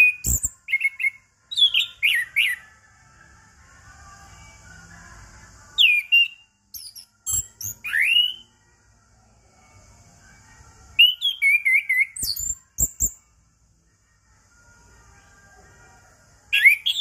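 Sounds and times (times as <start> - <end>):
thrush singing: 3.8 - 8.5, 16.2 - 17.0.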